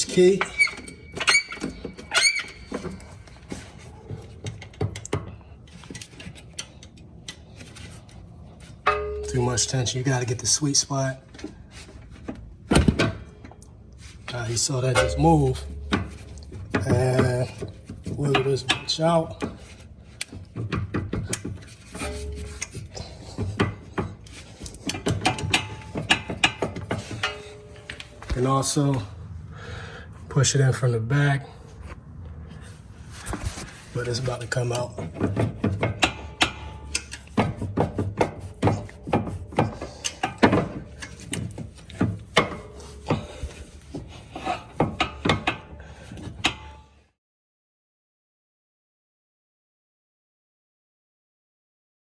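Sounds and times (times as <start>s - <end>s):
metal knocks and scraping: 0.0s - 10.6s, 11.2s - 28.4s, 33.2s - 47.0s
metal scraping: 14.1s - 17.6s, 21.6s - 28.2s.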